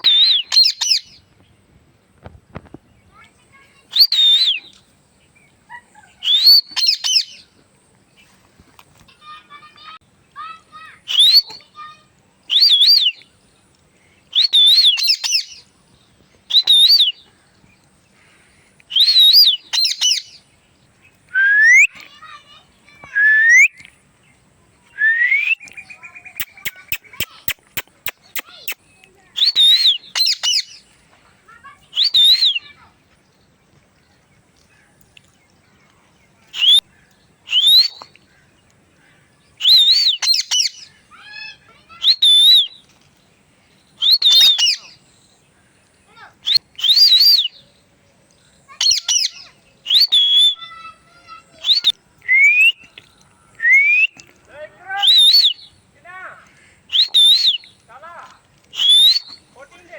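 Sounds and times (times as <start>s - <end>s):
parrot calling and whistling: 0.0s - 1.2s, 3.9s - 4.7s, 5.7s - 7.4s, 11.1s - 11.6s, 12.5s - 13.2s, 14.3s - 15.6s, 16.5s - 17.2s, 18.9s - 20.4s, 21.3s - 22.0s, 29.4s - 30.8s, 31.9s - 32.8s, 36.5s - 36.9s, 37.5s - 38.1s, 39.6s - 42.8s, 44.0s - 45.0s, 46.4s - 47.6s, 48.7s - 52.8s, 55.0s - 55.7s, 56.9s - 57.7s, 58.7s - 59.4s
sharp clicks: 26.4s - 29.2s.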